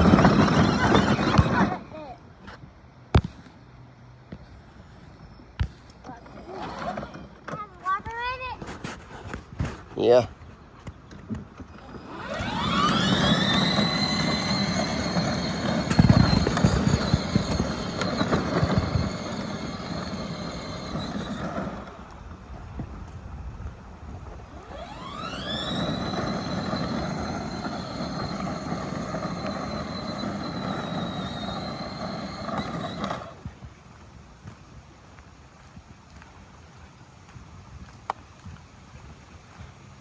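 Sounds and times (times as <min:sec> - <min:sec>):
electric motors whining: 0:00.0 - 0:01.9, 0:11.6 - 0:22.3, 0:24.4 - 0:33.5.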